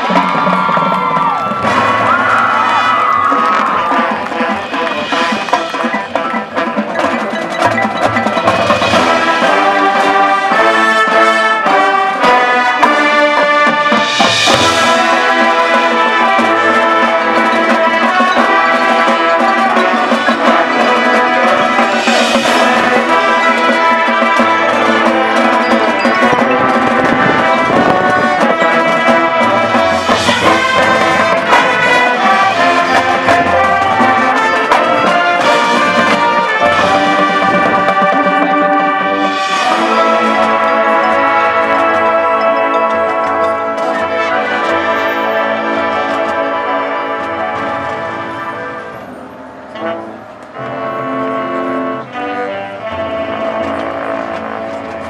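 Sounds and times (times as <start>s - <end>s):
marching band playing: 0.0s - 55.0s.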